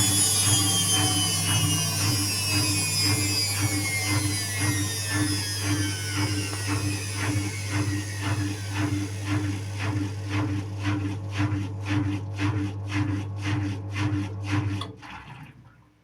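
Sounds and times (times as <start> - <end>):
motor whine falling: 0.0 - 10.9
motor hum: 0.0 - 15.0
washing machine drum swishing: 0.0 - 15.0.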